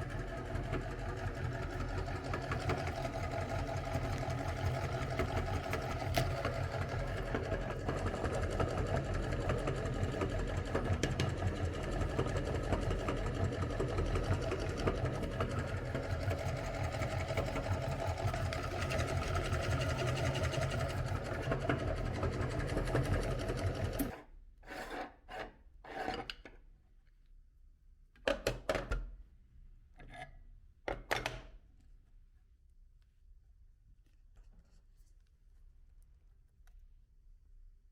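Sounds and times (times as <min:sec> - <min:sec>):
electric meat grinder running: 0:00.0 - 0:24.1.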